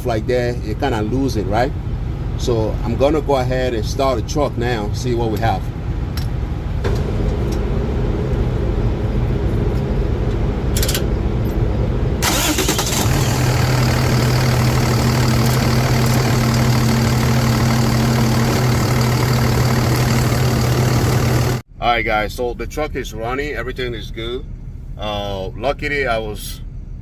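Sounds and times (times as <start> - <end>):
low rumble: 0.0 - 12.2
truck engine starting and idling: 0.0 - 27.0.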